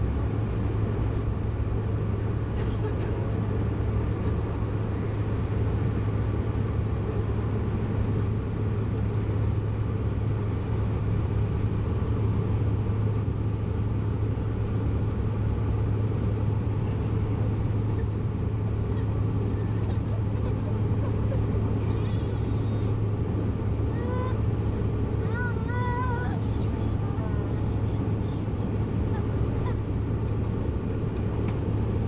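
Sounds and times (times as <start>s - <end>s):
jet airliner cabin noise: 0.0s - 32.0s.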